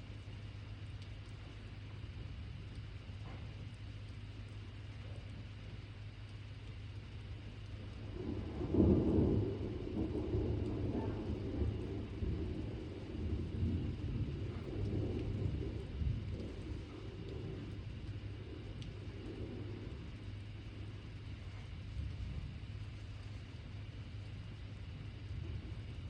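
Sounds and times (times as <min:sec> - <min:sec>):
rain hissing: 0:00.0 - 0:26.0
thunder rumbling: 0:07.7 - 0:26.0.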